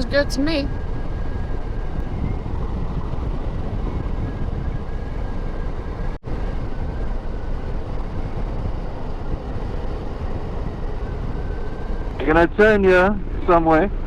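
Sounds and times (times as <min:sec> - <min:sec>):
wind rumble on microphone: 0:00.0 - 0:14.0.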